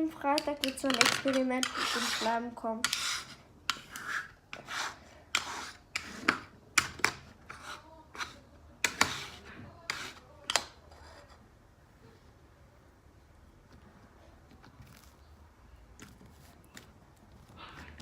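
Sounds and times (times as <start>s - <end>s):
utensil scraping a container: 0.4s - 11.4s.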